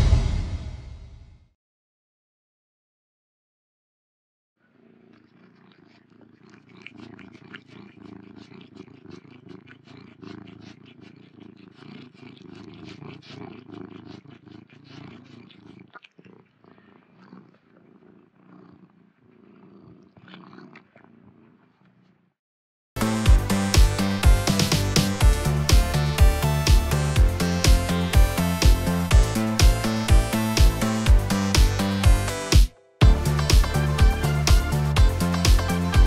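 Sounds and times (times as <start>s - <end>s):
cat purring: 4.6s - 22.4s, 23.2s - 36.0s.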